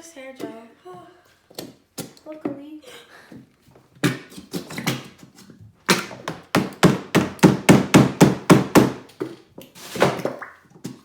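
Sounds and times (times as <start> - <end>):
sharp knocks: 5.9 - 9.0.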